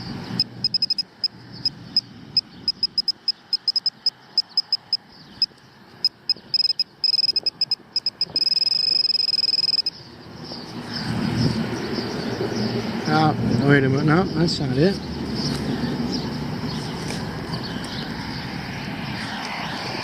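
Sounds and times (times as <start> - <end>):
pinpointer beeping: 0.0 - 10.0
pinpointer steady tone: 0.4 - 10.0.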